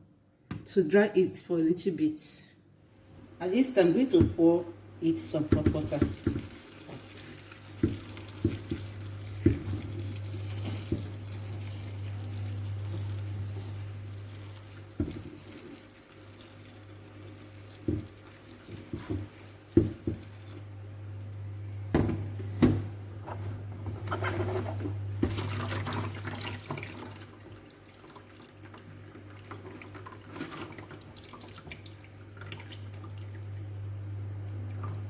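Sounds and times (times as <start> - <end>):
water splashing in a pot: 5.4 - 20.7, 25.2 - 33.7.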